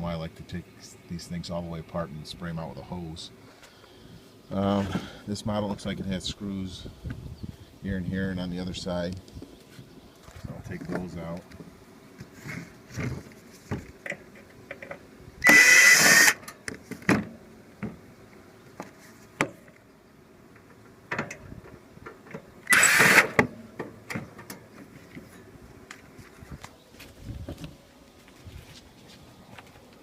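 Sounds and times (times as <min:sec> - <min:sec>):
cordless drill running: 0:15.4 - 0:16.4, 0:22.7 - 0:23.4.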